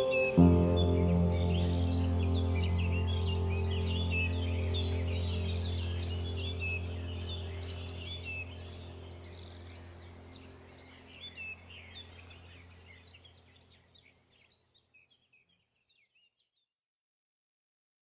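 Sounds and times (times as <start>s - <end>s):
low steady drone: 0.0s - 13.6s
small songbirds chirping: 0.0s - 16.7s.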